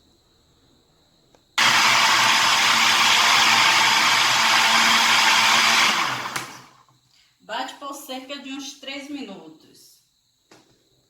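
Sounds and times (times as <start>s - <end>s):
blender motor running: 1.6s - 6.8s.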